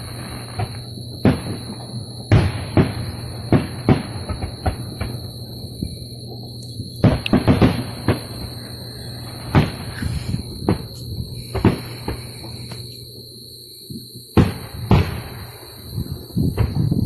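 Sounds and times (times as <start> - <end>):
steady high whine: 0.0 - 17.0
sharp bangs: 7.0 - 12.3.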